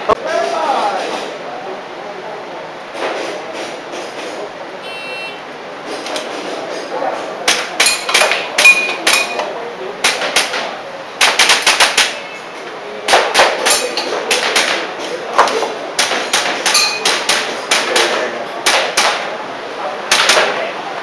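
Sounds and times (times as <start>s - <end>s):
airsoft pistol shots: 10.0s - 12.2s, 20.1s - 20.6s.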